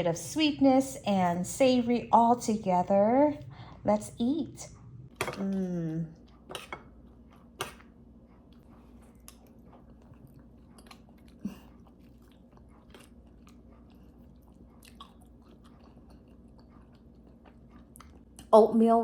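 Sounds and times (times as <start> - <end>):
person chewing: 5.4 - 18.5.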